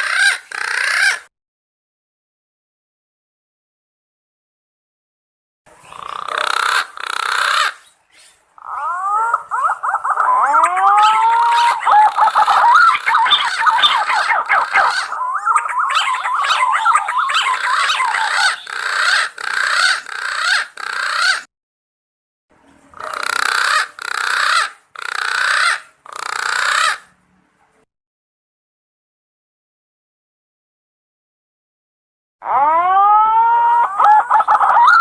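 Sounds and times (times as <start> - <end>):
pigeons calling with wavering whistles: 5.9 - 21.4, 32.6 - 35.0.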